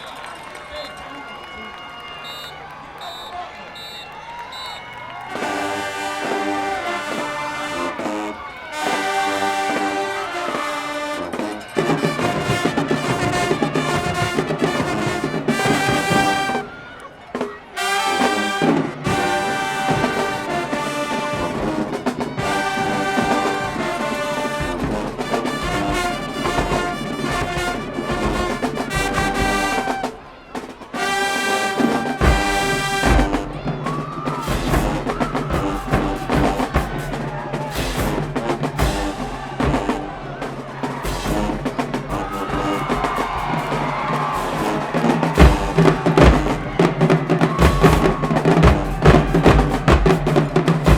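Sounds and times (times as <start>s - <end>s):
brass band playing loud chords: 0.0s - 50.9s
low drum hits: 37.8s - 40.3s, 41.0s - 46.8s.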